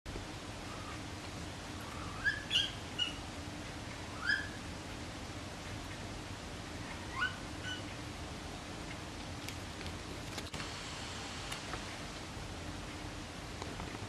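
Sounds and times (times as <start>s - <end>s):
animal chirping: 1.8s - 3.2s, 4.1s - 4.6s, 6.9s - 7.9s.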